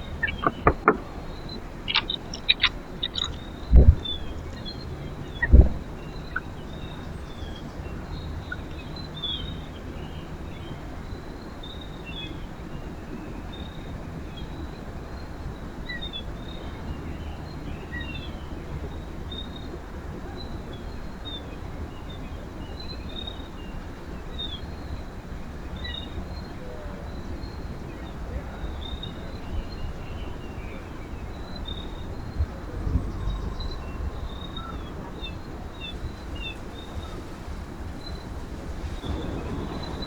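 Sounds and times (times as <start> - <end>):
low background rumble: 0.0 - 12.3, 26.8 - 40.0
small birds chirping: 0.0 - 19.7, 25.8 - 40.0.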